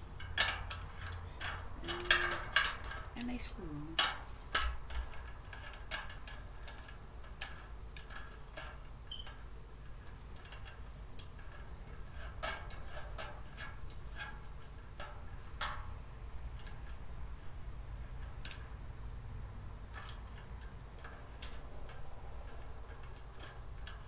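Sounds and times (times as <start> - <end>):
cart parts clicking and knocking: 0.0 - 3.2.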